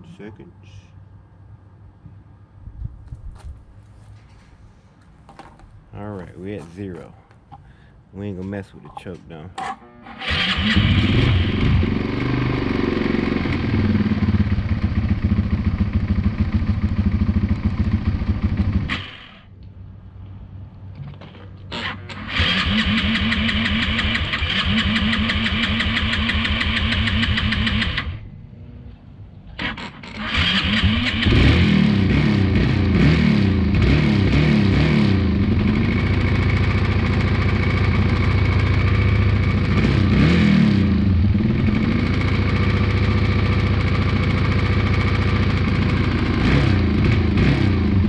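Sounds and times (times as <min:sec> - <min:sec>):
electric starter cranking: 0:09.6 - 0:14.0, 0:21.8 - 0:28.2, 0:29.5 - 0:31.6
engine running and revving: 0:10.2 - 0:19.4, 0:22.1 - 0:28.2, 0:29.6 - 0:48.0.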